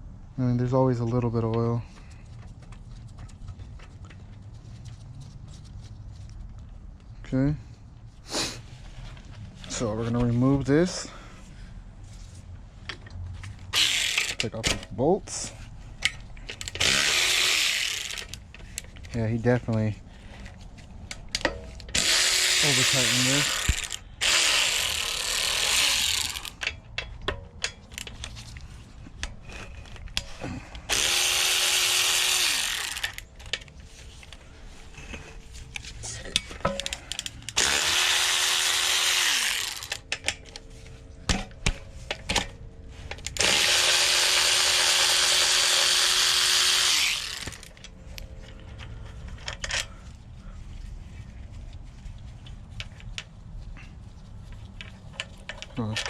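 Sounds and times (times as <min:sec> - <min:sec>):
power driver motor winding: 0:13.7 - 0:14.5, 0:16.6 - 0:18.4, 0:21.9 - 0:26.6, 0:30.9 - 0:33.3, 0:37.1 - 0:40.0, 0:43.2 - 0:47.8
clicks of bolts being handled: 0:16.0 - 0:16.9, 0:26.3 - 0:30.4, 0:35.7 - 0:37.7, 0:39.6 - 0:40.7.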